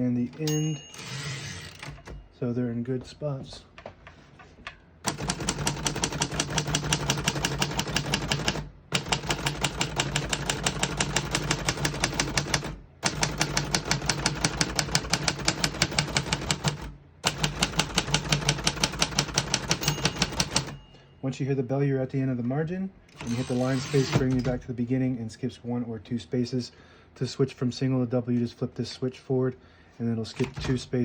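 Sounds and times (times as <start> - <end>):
typewriter typing rapidly: 5.1 - 20.8, 23.2 - 24.4.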